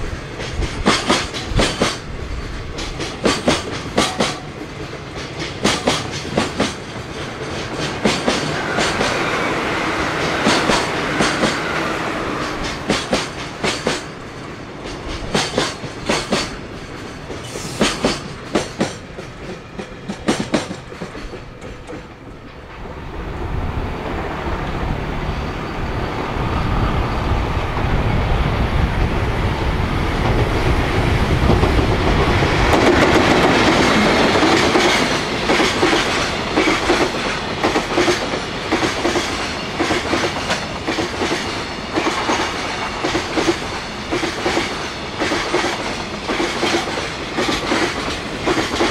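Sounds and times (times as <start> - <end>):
train wheels clattering over rails: 0.0 - 23.1, 29.9 - 48.9.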